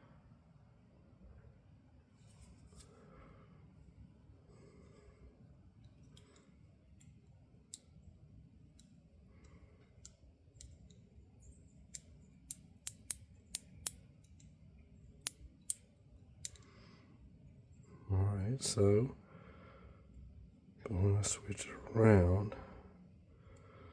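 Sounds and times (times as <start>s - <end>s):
ratchet clicking: 12.5s - 14.0s.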